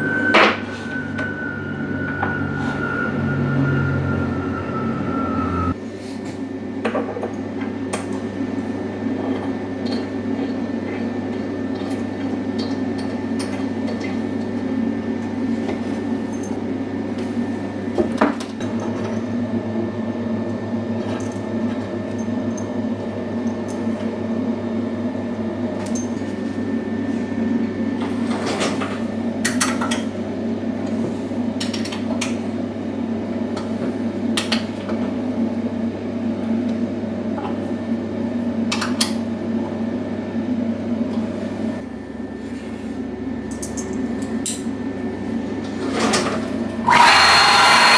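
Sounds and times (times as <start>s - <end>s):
steady machine hum: 0.0s - 5.9s, 46.7s - 47.9s.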